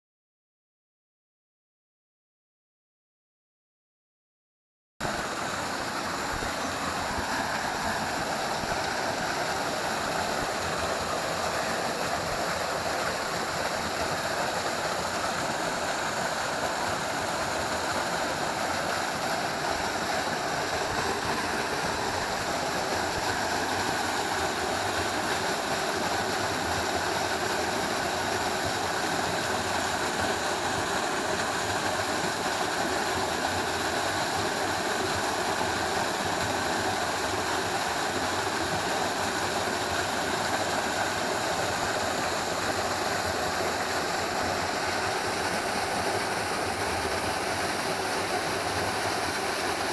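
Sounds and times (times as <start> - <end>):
waterfall rushing: 5.0 - 49.9.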